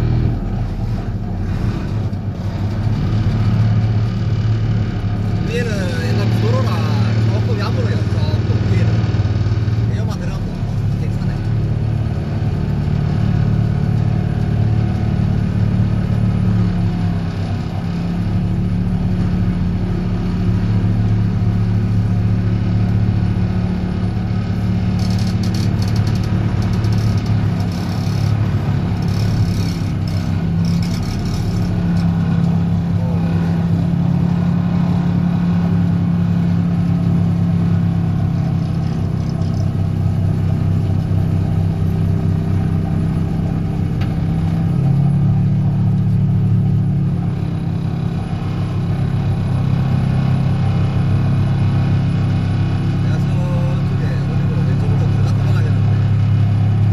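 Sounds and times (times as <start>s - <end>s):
vibratory hammer drone: 18.3s - 56.9s
faint rattling: 24.9s - 34.2s.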